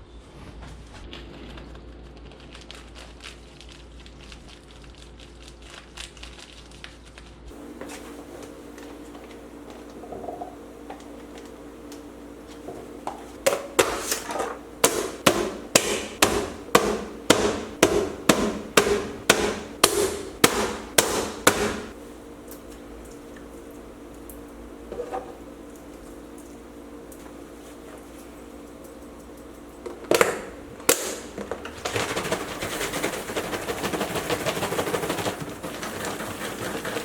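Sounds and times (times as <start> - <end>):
sharp evenly spaced knocks: 14.8 - 21.9.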